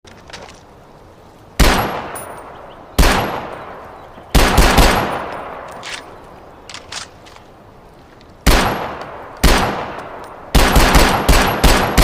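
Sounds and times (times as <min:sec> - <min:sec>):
pistol shots echoing: 0:01.6 - 0:02.2, 0:03.0 - 0:06.2, 0:08.4 - 0:12.0
faint clicks: 0:05.2 - 0:08.4.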